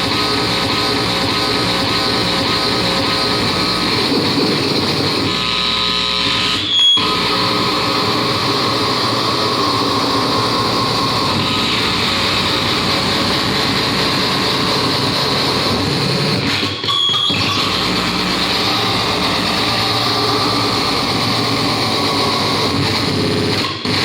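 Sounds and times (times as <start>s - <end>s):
distorted electronic noise music: 0.0s - 24.0s.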